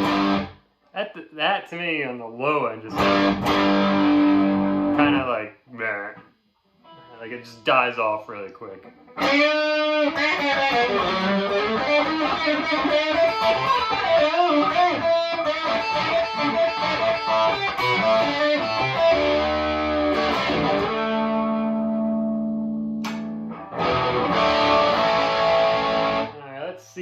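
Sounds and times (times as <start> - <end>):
electric guitar playing: 0.0 - 0.6, 2.9 - 5.4, 8.8 - 26.4.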